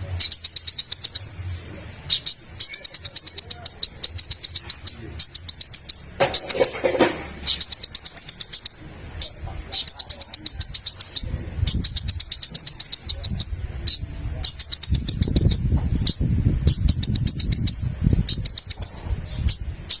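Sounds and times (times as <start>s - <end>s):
bird chip trills: 0.0s - 1.4s, 2.0s - 20.0s
low rumble: 15.1s - 19.9s.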